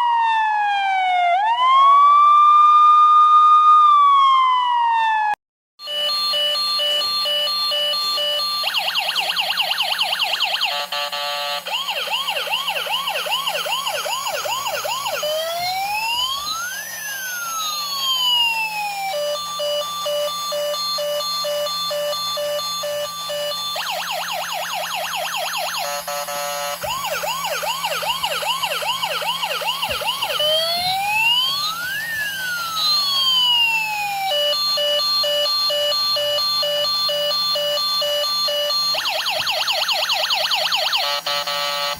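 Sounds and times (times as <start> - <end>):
electronic emergency siren: 0.0 - 41.9.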